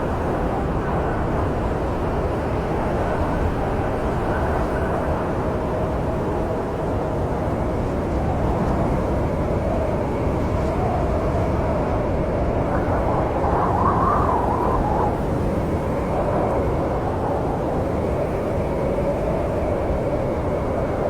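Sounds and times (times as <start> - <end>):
snowstorm wind rushing: 0.0 - 21.0
wind howling: 10.8 - 21.0.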